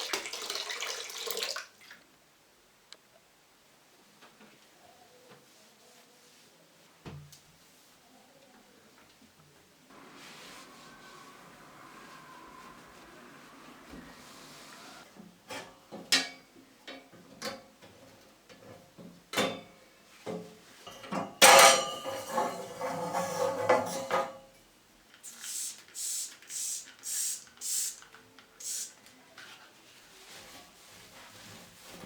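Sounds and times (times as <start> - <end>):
short hissing strokes: 9.9 - 15.1, 25.2 - 28.0, 28.6 - 29.0.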